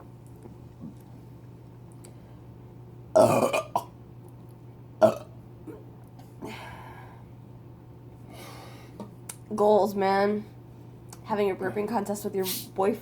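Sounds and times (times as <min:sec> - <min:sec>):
person burping loudly: 0:03.1 - 0:03.9, 0:05.0 - 0:05.8.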